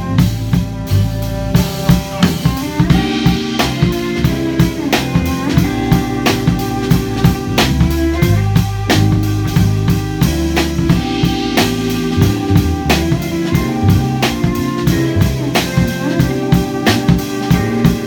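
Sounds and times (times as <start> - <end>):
sustained bass and cello: 0.0 - 17.0
drum kit hip-hop groove: 0.0 - 18.0.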